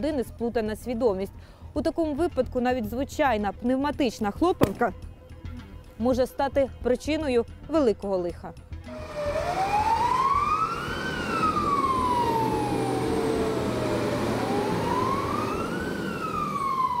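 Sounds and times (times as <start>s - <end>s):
emergency siren wailing: 8.9s - 17.0s.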